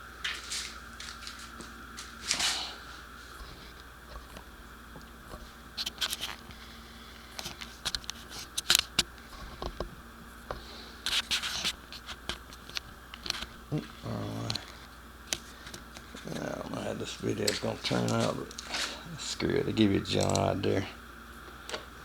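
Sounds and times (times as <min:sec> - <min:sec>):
person muttering: 0:13.7 - 0:14.7.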